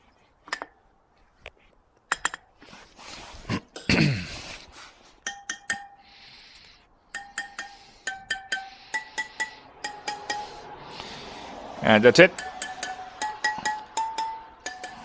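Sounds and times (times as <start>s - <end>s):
wrench tapping wheel spokes: 2.1s - 2.5s, 5.2s - 6.1s, 7.1s - 10.8s, 12.3s - 15.0s
scraping rustling noise: 2.6s - 3.7s, 4.4s - 5.2s.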